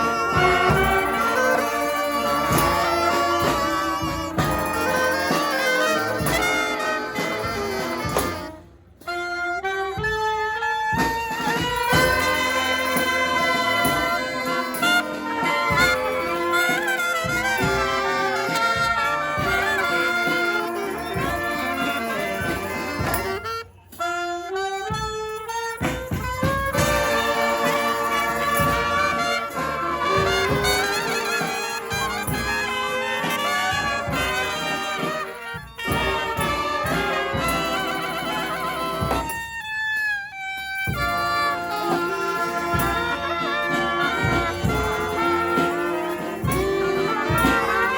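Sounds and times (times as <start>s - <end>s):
brass band playing: 0.0s - 47.9s
lone horn line: 0.0s - 47.9s.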